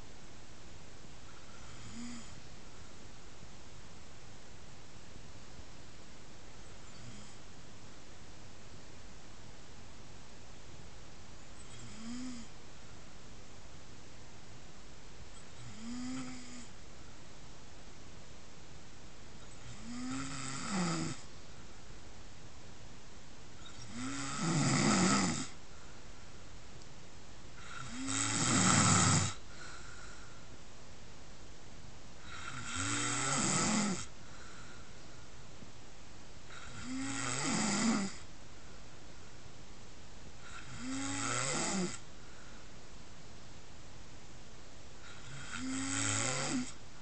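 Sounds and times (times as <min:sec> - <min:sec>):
pig snoring: 0:01.4 - 0:02.4, 0:06.9 - 0:07.4, 0:11.6 - 0:12.6, 0:15.5 - 0:16.8, 0:19.5 - 0:21.3, 0:23.6 - 0:25.6, 0:27.6 - 0:29.4, 0:32.2 - 0:34.1, 0:36.5 - 0:38.3, 0:40.4 - 0:42.0, 0:45.0 - 0:46.8.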